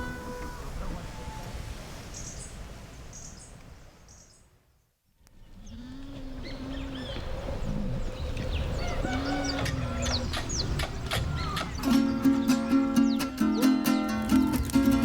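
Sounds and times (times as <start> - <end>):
drawn-out low animal calls: 5.5 - 13.0.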